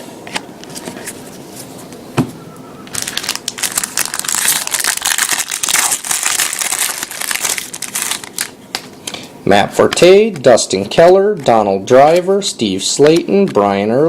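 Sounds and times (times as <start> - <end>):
wrapper tearing and crinkling: 2.9 - 8.8
cards clicking: 13.0 - 13.7.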